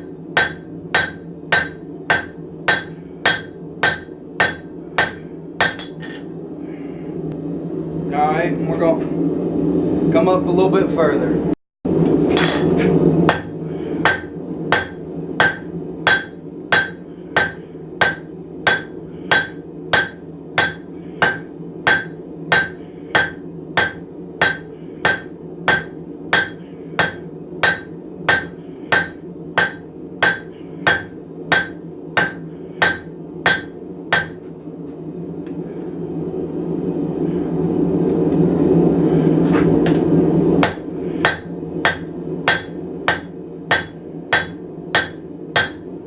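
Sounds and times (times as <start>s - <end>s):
hammer striking steel on anvil: 0.0s - 6.4s, 12.3s - 34.6s, 39.8s - 46.0s
steady low hum: 0.0s - 46.0s.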